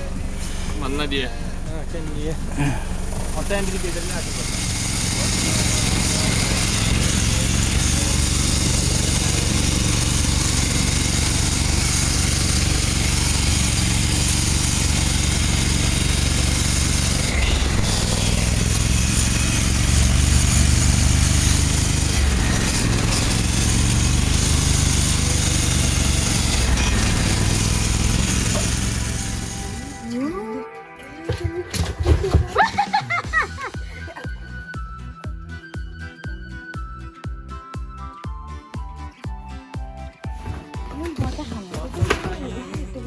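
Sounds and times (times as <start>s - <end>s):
vehicle engine running: 0.0s - 30.3s, 40.4s - 43.0s.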